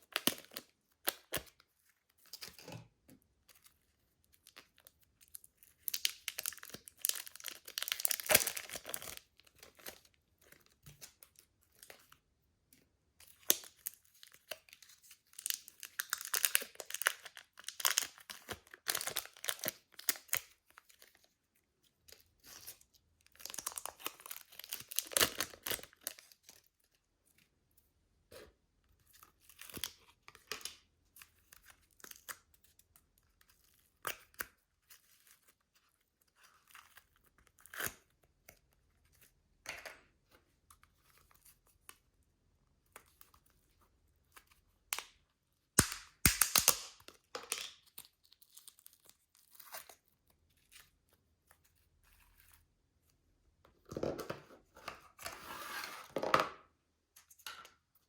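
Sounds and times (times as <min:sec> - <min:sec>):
plastic crinkling: 0:05.9 - 0:09.2
slime sticky crackles and pops: 0:45.8 - 0:47.1.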